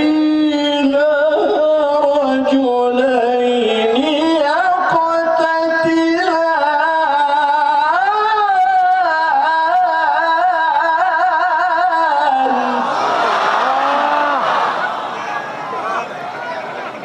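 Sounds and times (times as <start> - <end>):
man reciting melodically: 0.0 - 13.0.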